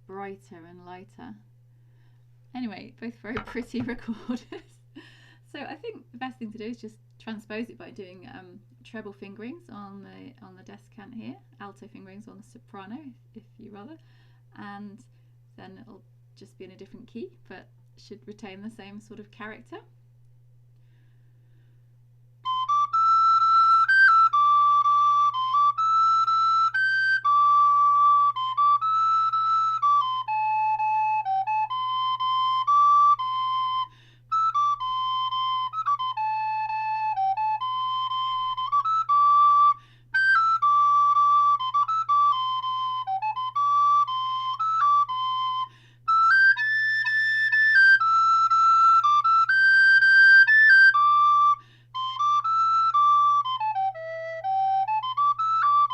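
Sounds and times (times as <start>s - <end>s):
recorder playing lively melody: 22.4s - 55.9s.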